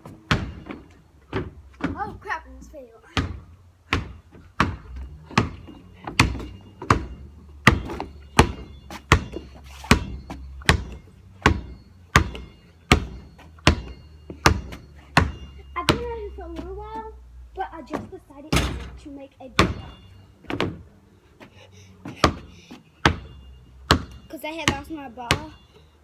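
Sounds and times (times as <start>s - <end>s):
basketball bouncing: 0.0s - 2.2s, 3.1s - 16.7s, 19.6s - 20.8s, 22.1s - 25.6s.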